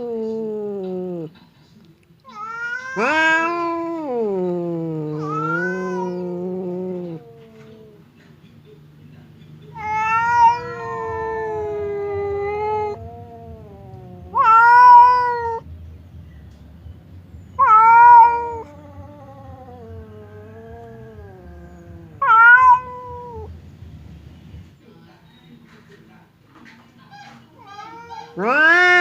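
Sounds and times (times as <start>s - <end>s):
cats yowling: 0.0s - 1.3s, 2.3s - 8.1s, 9.6s - 15.6s, 17.5s - 23.5s, 27.6s - 29.0s.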